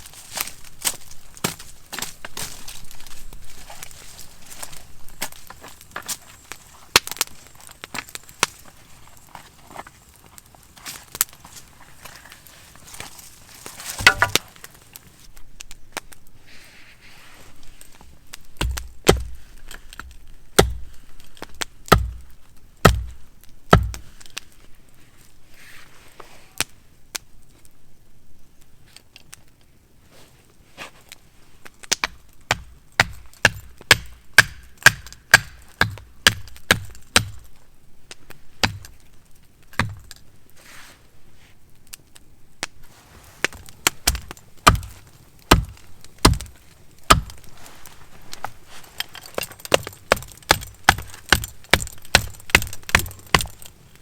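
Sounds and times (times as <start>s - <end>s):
firewood chopping blows: 13.8s - 14.8s, 18.5s - 24.3s, 31.9s - 37.5s, 38.6s - 39.0s, 43.4s - 47.6s, 49.2s - 53.7s.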